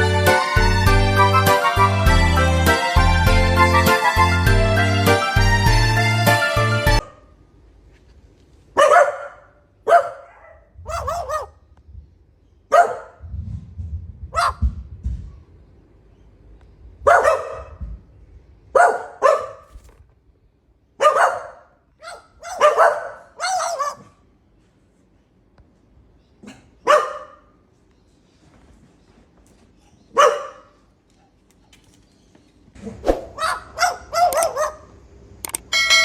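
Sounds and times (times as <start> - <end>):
dog barking: 8.8 - 11.6, 12.7 - 13.2, 14.3 - 14.8, 17.0 - 17.9, 18.7 - 19.9, 21.0 - 24.2, 26.4 - 27.6, 30.1 - 30.8, 33.2 - 34.9.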